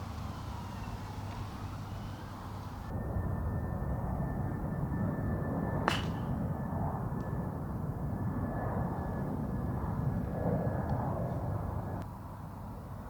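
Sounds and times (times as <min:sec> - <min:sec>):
faint high hum: 0:00.0 - 0:06.5
golf club striking ball: 0:00.1 - 0:02.9, 0:05.8 - 0:06.4.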